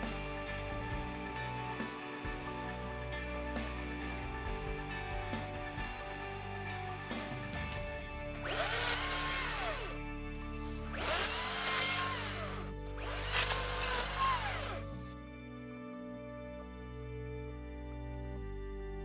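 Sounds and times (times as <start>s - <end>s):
background music: 0.0s - 19.0s
electric chainsaw revving: 7.7s - 15.1s.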